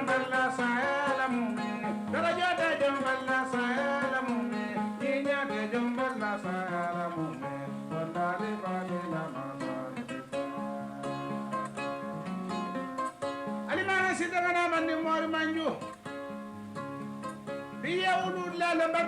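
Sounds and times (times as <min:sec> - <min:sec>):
man singing: 0:00.0 - 0:10.4, 0:13.7 - 0:15.9, 0:17.7 - 0:19.0
plucked harp-lute: 0:00.0 - 0:14.6, 0:15.2 - 0:17.9.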